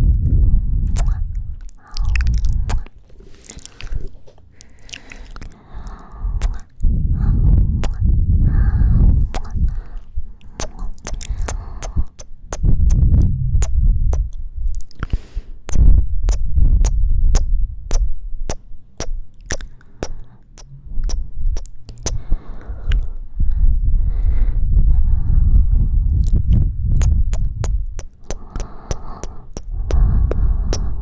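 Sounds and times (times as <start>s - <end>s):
wet kissing smacks: 0.9s - 2.9s, 10.5s - 13.0s, 19.0s - 20.2s, 27.0s - 30.9s
breath puffs into microphone: 7.0s - 12.7s, 27.0s - 31.0s.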